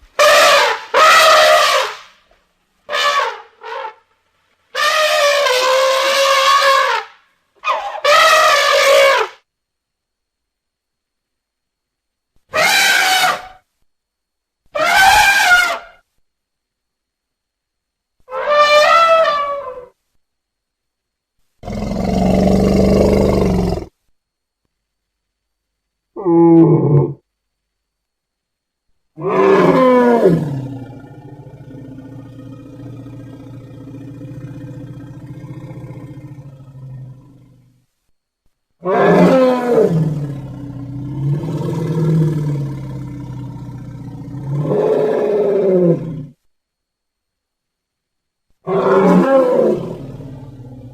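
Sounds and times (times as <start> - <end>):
elephant trumpeting: 0.2 - 2.2, 2.9 - 4.0, 4.7 - 9.4, 12.5 - 13.6, 14.8 - 16.0, 18.3 - 19.9, 29.2 - 37.6, 38.8 - 46.2, 48.7 - 50.9
elephant roar: 21.6 - 23.9, 29.2 - 37.7, 38.8 - 46.4, 48.6 - 50.9.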